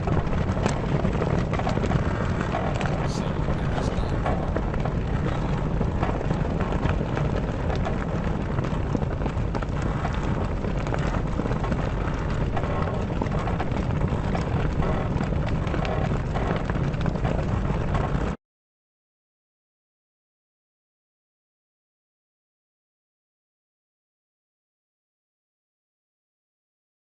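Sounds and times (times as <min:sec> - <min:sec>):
mast creaking: 0:00.0 - 0:18.4
sailcloth flapping in wind: 0:00.0 - 0:18.4.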